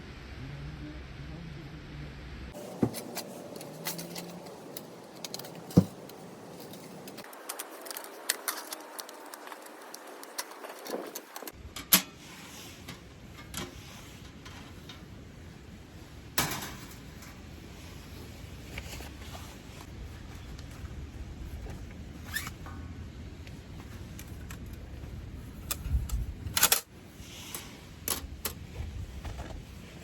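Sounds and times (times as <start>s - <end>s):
clicks and clinks of objects: 2.6s - 12.1s.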